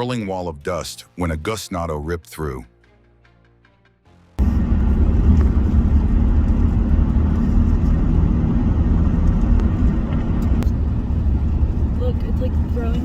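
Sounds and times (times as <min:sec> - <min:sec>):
strong wind buffeting microphone: 0:04.4 - 0:13.0.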